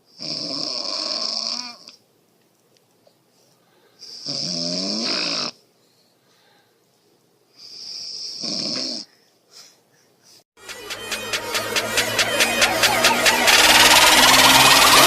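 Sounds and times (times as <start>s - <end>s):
woman snoring: 0.2s - 1.9s, 4.2s - 5.6s, 8.0s - 9.1s
music: 10.6s - 15.0s.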